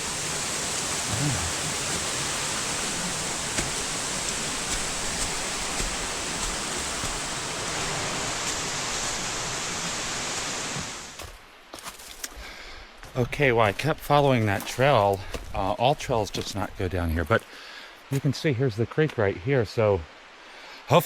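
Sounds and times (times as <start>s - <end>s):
creek water rushing: 0.0s - 21.0s.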